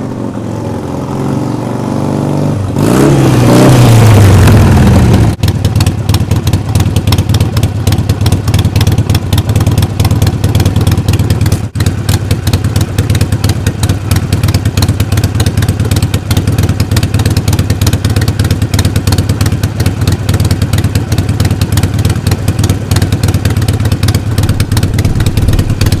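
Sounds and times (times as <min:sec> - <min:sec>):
motorcycle engine idling: 0:00.0 - 0:26.0.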